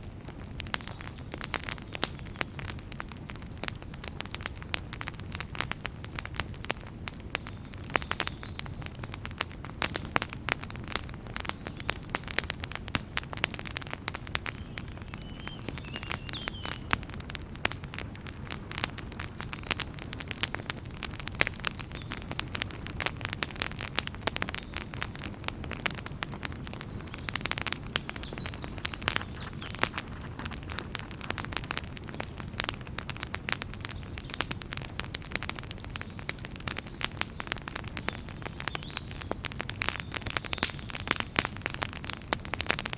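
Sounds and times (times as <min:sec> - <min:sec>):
wood fire crackling and popping: 0:00.0 - 0:42.9.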